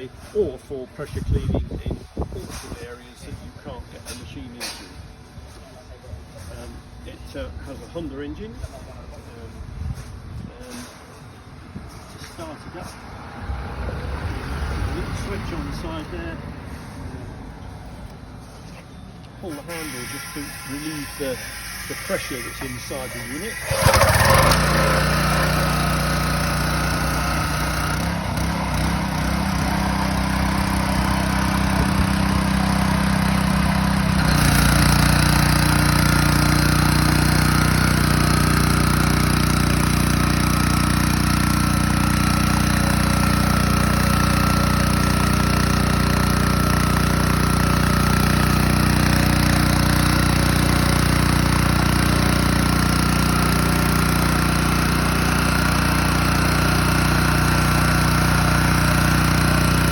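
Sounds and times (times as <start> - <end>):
petrol engine running: 13.2 - 59.9.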